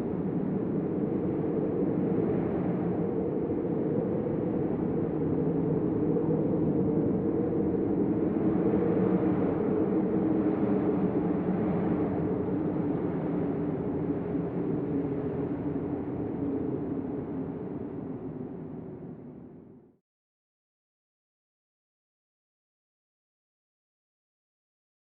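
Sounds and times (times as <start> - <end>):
deep storm wind blowing: 0.0 - 19.7.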